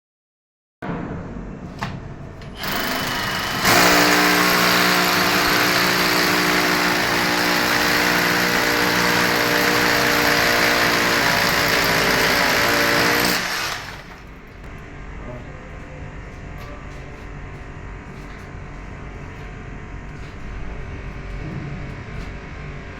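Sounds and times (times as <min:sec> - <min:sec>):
power tool motor running: 0:02.6 - 0:14.2.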